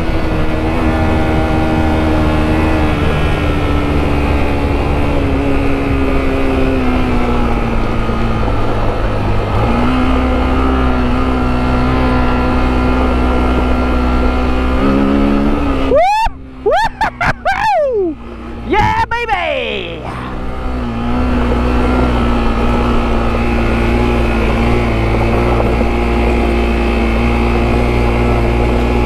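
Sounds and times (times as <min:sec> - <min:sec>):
motorcycle engine under load: 0:20.2 - 0:29.0.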